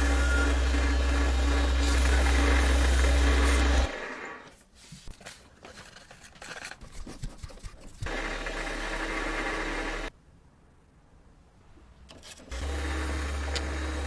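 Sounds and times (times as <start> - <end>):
small electric power tool running: 0.0 - 4.3, 8.0 - 10.1, 12.5 - 14.0
scraping and rubbing: 0.0 - 8.5.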